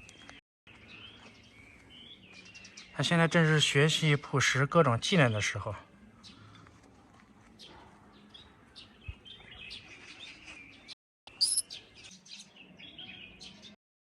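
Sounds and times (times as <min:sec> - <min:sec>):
young bird chirping: 0:11.3 - 0:11.8.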